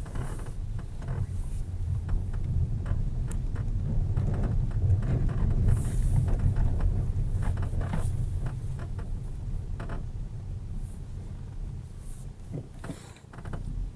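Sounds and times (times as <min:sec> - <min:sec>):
steady low rumble: 0:00.0 - 0:13.9
irregular creaks: 0:12.5 - 0:13.9.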